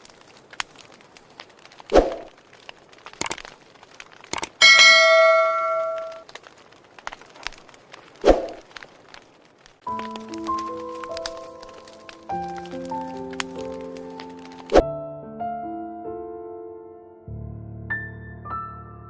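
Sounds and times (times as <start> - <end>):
bell ringing: 4.6 - 6.2.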